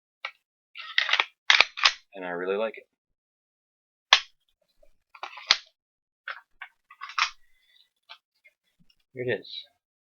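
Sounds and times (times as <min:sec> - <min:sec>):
hard objects clicking and rattling: 0:00.8 - 0:02.0, 0:05.2 - 0:05.7, 0:06.3 - 0:07.4.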